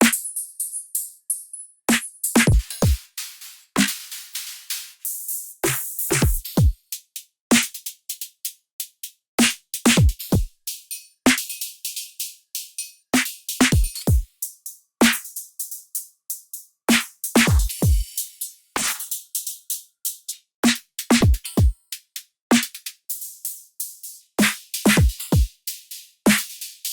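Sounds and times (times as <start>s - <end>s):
hi-hat hits: 1.9s - 26.9s
electronic kick drums: 2.4s - 3.1s, 5.7s - 6.8s, 9.9s - 10.6s, 13.6s - 14.3s, 17.4s - 18.1s, 21.1s - 21.8s, 24.9s - 25.6s.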